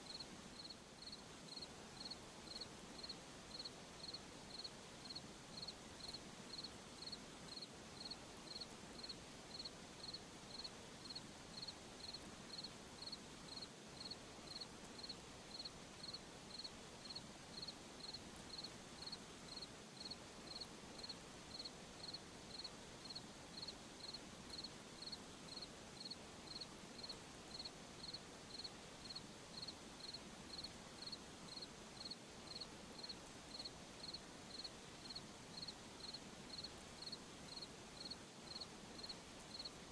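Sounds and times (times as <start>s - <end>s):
faint night-time hiss: 0.0s - 39.9s
cricket chirping: 0.1s - 39.7s.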